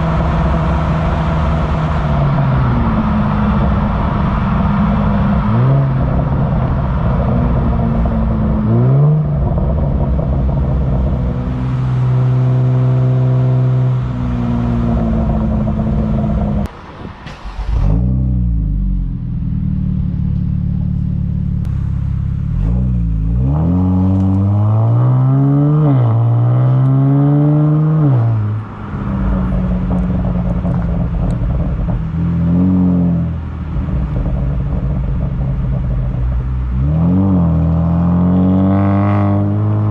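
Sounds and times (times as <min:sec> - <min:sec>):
car engine revving: 0:00.0 - 0:16.7, 0:17.3 - 0:39.9
exhaust cracks: 0:28.2 - 0:37.9.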